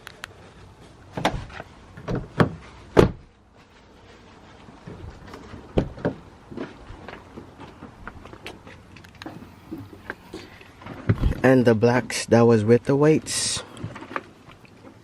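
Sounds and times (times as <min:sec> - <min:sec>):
knocks and clunks of parts: 0:01.1 - 0:03.3, 0:04.9 - 0:11.5.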